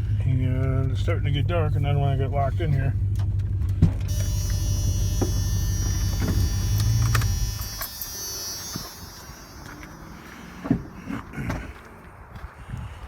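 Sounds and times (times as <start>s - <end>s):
vehicle engine humming: 0.0s - 12.5s
faint high whine: 4.1s - 11.3s.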